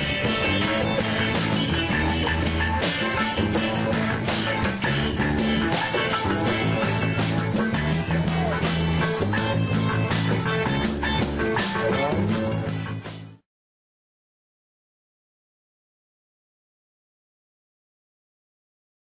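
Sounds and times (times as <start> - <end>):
rock music with guitar and drums: 0.0 - 13.4.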